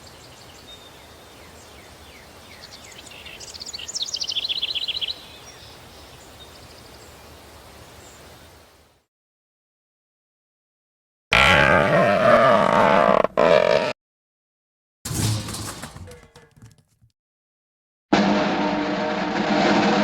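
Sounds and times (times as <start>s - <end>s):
loud rapid trilled birdsong: 0.0s - 8.4s
birds chirping: 0.0s - 8.8s.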